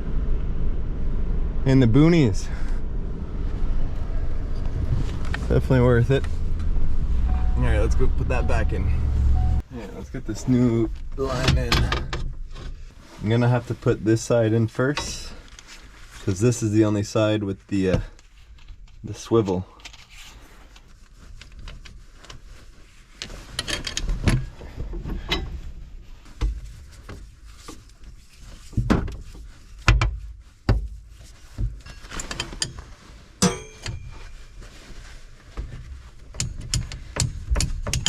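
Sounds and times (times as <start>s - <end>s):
ringing metallic clank: 33.4s - 34.4s.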